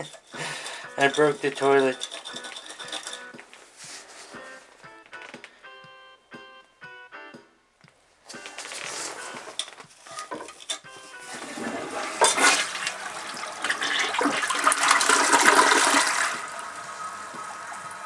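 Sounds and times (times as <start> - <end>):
toilet tank refilling hiss: 0.0 - 3.1, 11.3 - 18.0
toilet water rushing: 11.2 - 18.0.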